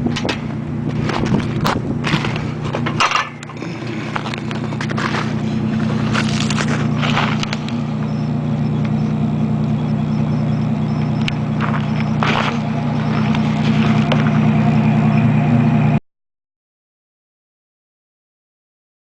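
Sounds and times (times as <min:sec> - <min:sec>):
crunching scraping noises: 0:00.0 - 0:15.0
low mechanical hum: 0:00.0 - 0:16.0.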